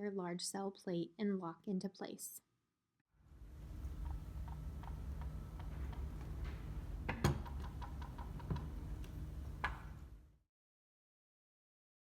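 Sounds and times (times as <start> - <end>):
low hum: 3.2 - 10.4.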